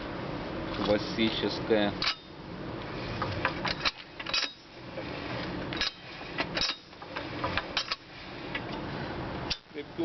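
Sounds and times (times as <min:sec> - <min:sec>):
low background hum: 0:00.0 - 0:10.0.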